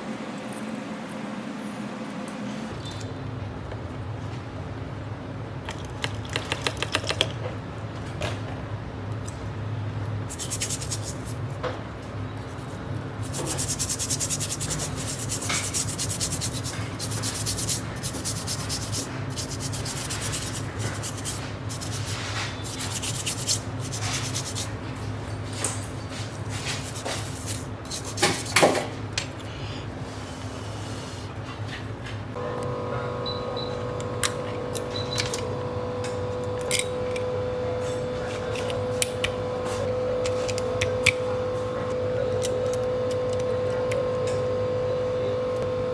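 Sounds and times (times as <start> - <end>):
steady low hum: 12.4 - 45.9
hand tool scraping circuit board: 13.2 - 24.7.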